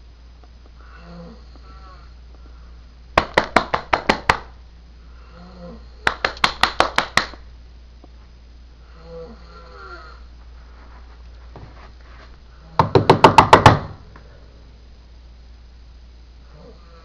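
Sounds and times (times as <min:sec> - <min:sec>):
man snoring: 0:00.8 - 0:02.2, 0:05.2 - 0:06.0, 0:08.8 - 0:10.3, 0:16.4 - 0:17.0
sharp knocks: 0:03.2 - 0:04.5, 0:12.8 - 0:14.0.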